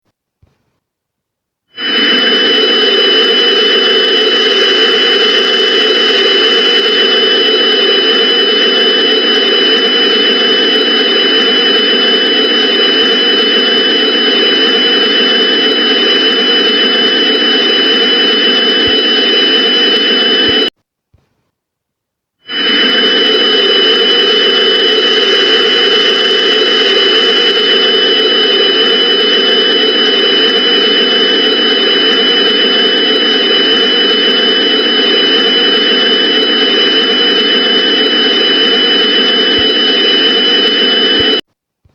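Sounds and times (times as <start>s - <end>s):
loud rushing drone: 22.5s - 41.4s.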